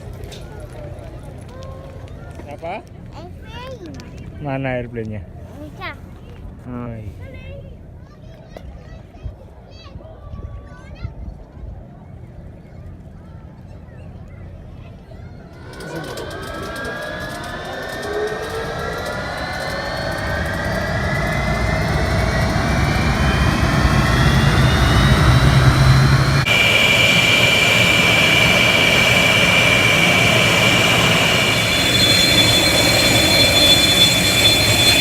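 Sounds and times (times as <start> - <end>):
jet aircraft flying past: 15.4 - 35.0.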